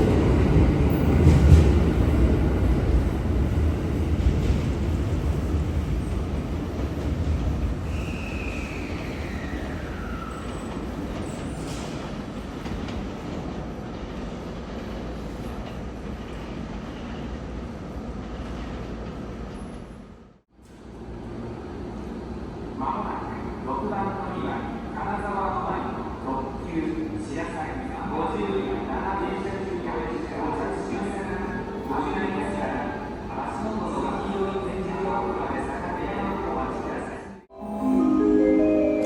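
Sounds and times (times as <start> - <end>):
train rumbling on rails: 0.0 - 27.9.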